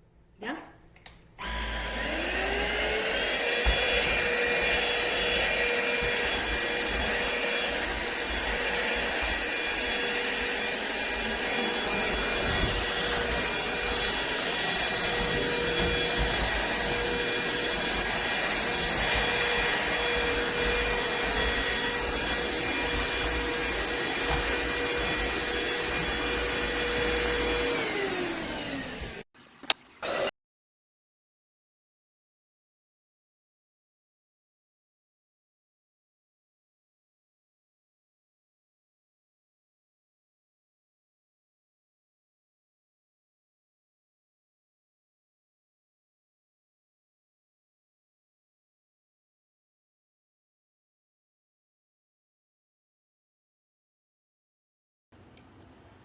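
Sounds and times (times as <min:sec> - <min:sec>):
vacuum cleaner motor whine: 0:01.4 - 0:29.3.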